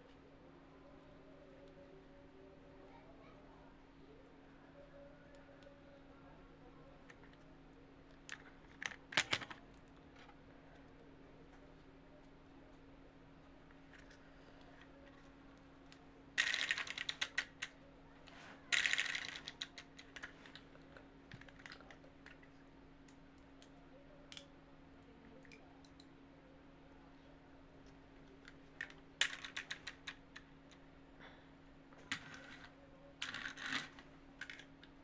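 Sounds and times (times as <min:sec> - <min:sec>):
faint steady hum: 0:00.0 - 0:35.0
plastic toy pieces clicking: 0:08.3 - 0:09.6, 0:16.4 - 0:17.8, 0:18.7 - 0:20.6, 0:28.4 - 0:30.5, 0:32.1 - 0:34.9.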